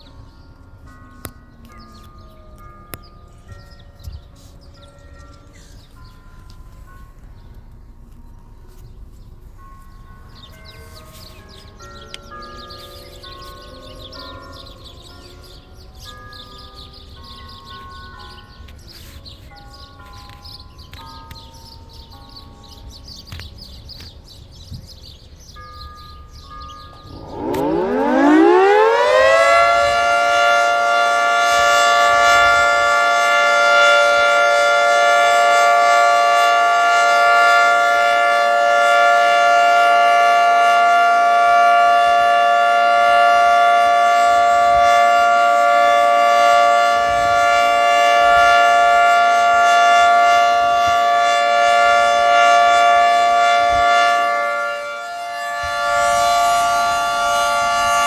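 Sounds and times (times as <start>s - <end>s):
faint church bells ringing: 0.0s - 58.0s
two-tone warning siren: 26.9s - 58.0s.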